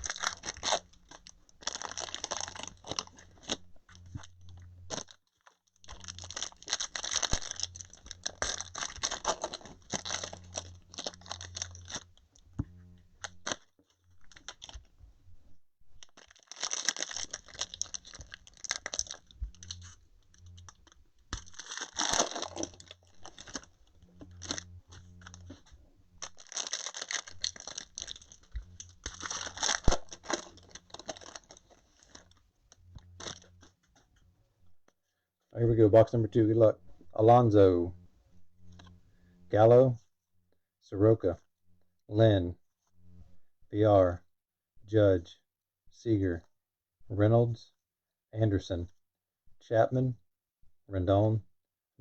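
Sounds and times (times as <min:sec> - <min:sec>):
plastic wrapping crinkling and tearing: 0:00.0 - 0:12.2, 0:13.2 - 0:14.9, 0:16.0 - 0:33.7.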